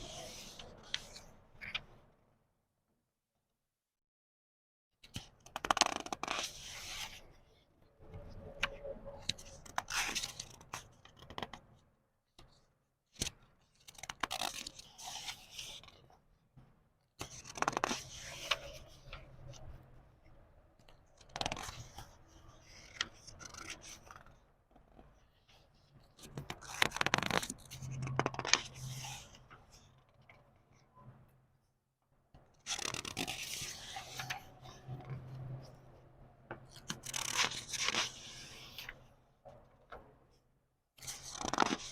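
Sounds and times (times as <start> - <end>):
book pages turning: 0.1 - 1.9, 13.2 - 16.0, 17.2 - 19.6, 26.2 - 29.7, 32.6 - 35.3, 36.6 - 39.0, 41.0 - 41.9.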